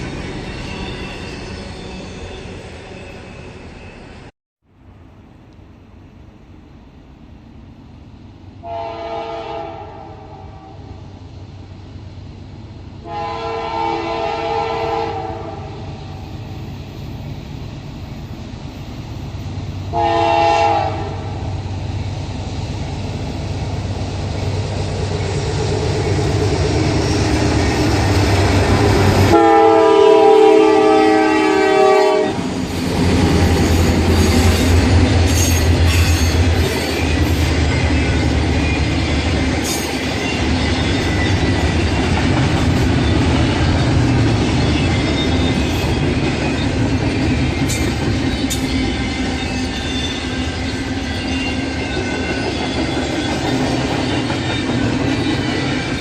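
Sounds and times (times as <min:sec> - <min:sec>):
train rumbling on rails: 0:00.0 - 0:56.0
locomotive air horn blasts: 0:08.6 - 0:10.8, 0:13.0 - 0:15.8, 0:19.9 - 0:21.4, 0:29.3 - 0:32.4.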